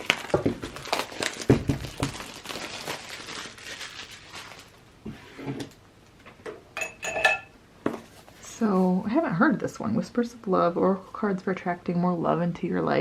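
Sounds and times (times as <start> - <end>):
packaging rustling and crackling: 0.0 - 4.9.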